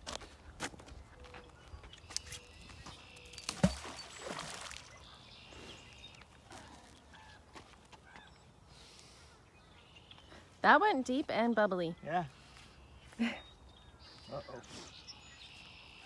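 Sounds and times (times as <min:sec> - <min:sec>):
faint water and outdoor sounds: 0:00.0 - 0:16.0
magnet splashing into water: 0:03.4 - 0:05.0.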